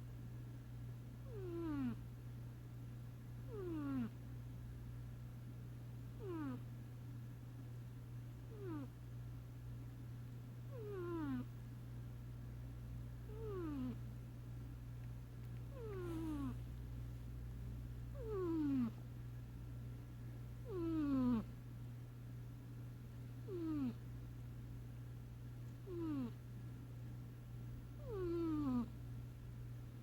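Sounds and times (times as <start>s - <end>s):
cat snoring with whistling tones: 1.2s - 2.0s, 3.5s - 4.1s, 6.2s - 6.6s, 8.5s - 8.9s, 10.7s - 11.5s, 13.3s - 14.0s, 18.2s - 19.0s, 20.6s - 21.5s, 23.5s - 24.0s, 25.8s - 26.4s, 28.0s - 28.9s.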